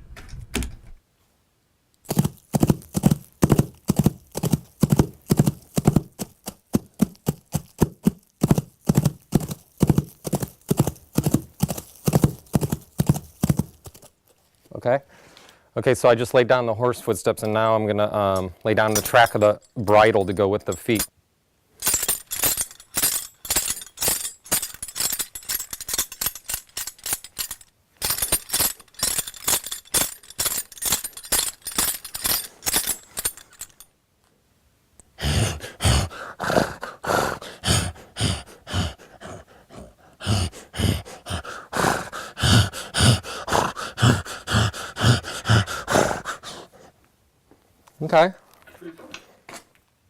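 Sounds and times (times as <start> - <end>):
horse tack jingling: 2.0 - 14.4, 18.7 - 21.1, 21.8 - 33.9, 37.6 - 39.0, 40.2 - 46.6.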